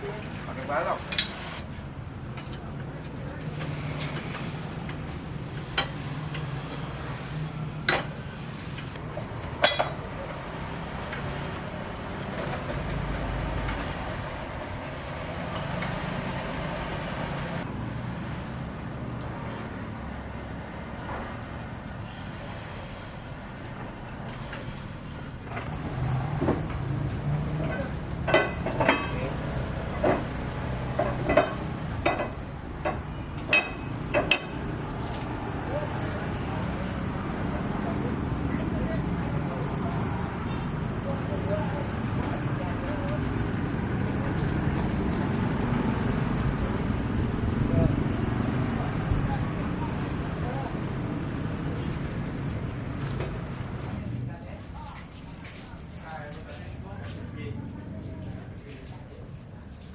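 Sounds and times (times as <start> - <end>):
low engine hum: 0.0 - 54.6
hand tools knocking and scraping: 2.3 - 14.2, 23.6 - 35.4.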